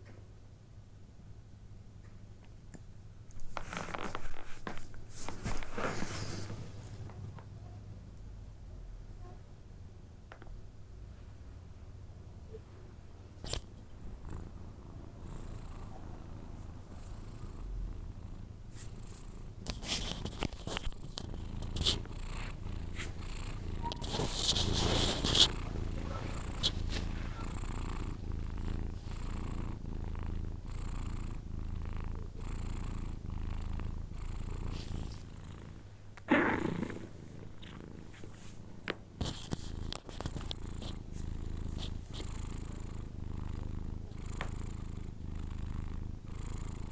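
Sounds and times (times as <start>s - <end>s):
cat breathing rumble: 14.4s - 35.9s.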